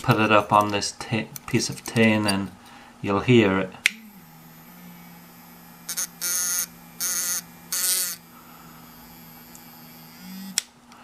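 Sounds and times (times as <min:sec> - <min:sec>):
electric toothbrush motor humming: 0:03.9 - 0:10.7.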